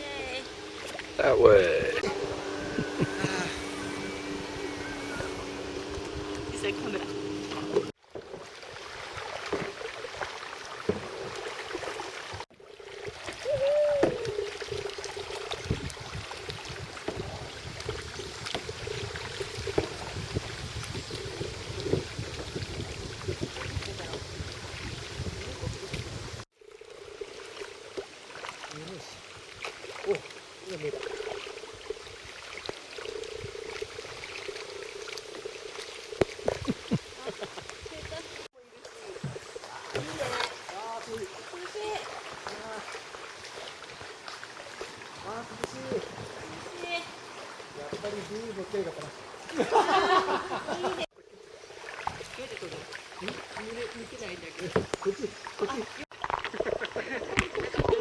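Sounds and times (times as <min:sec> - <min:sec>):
paddle strokes: 0:00.0 - 0:51.1, 0:51.7 - 0:58.0
water trickling and splashing: 0:00.0 - 0:58.0
short wavering tone: 0:01.8 - 0:07.9.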